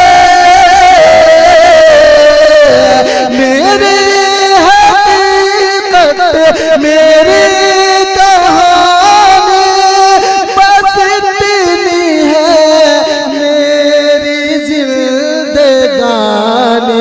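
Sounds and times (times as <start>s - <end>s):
man singing with long held notes: 0.0s - 17.0s.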